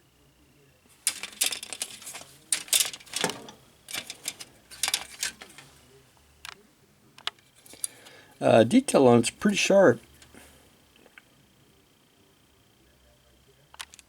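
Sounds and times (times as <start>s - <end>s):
plastic sprues clattering: 0.9s - 5.8s.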